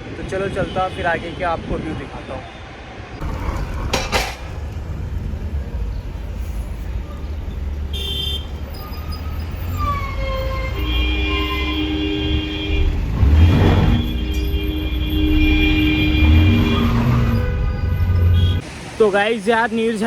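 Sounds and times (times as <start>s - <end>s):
moving vehicle rumble: 3.2s - 19.0s
vehicle horn tooting: 7.9s - 18.6s.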